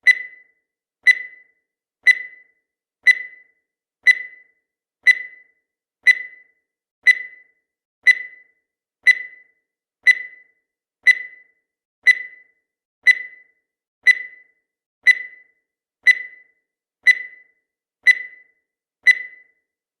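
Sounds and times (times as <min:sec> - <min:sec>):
short electronic beeps: 0:00.0 - 0:00.5, 0:01.1 - 0:01.5, 0:02.1 - 0:02.5, 0:03.1 - 0:03.5, 0:04.1 - 0:04.5, 0:05.1 - 0:07.5, 0:08.1 - 0:08.5, 0:09.1 - 0:15.5, 0:16.1 - 0:16.5, 0:17.1 - 0:19.6.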